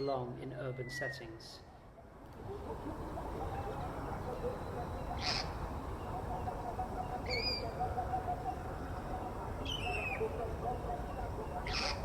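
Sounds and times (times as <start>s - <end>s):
low background noise: 0.0s - 12.0s.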